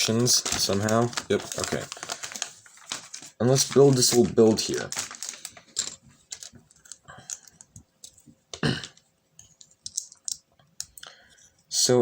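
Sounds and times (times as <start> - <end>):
plastic toy bricks clicking: 9.8 - 11.0.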